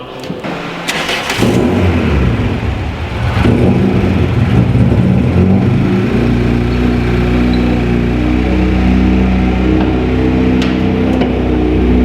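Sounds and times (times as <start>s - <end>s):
engine starting and idling: 0.0s - 9.8s.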